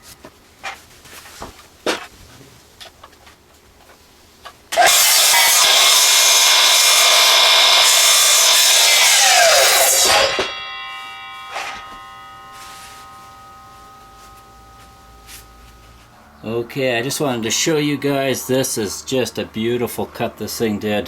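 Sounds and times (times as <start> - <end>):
power saw cutting log: 4.7 - 14.6
saw motor winding down: 4.7 - 15.3
saw blade ringing: 4.7 - 18.6.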